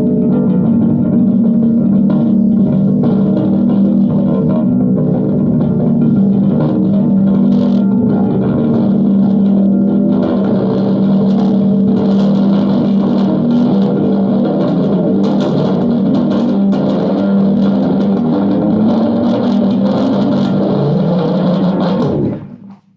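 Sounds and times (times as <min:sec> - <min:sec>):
bass guitar drone: 0:00.0 - 0:22.9
noisy scrapes and clicks: 0:00.0 - 0:22.9.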